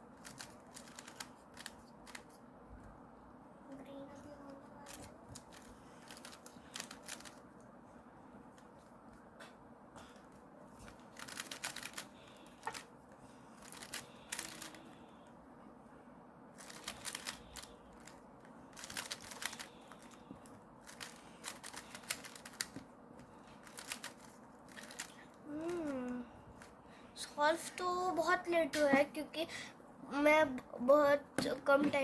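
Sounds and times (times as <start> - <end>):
rubik's cube clicking: 0.2 - 2.3, 4.9 - 7.4, 10.9 - 12.9, 13.6 - 14.8, 16.6 - 20.2, 20.8 - 22.8, 23.6 - 25.1.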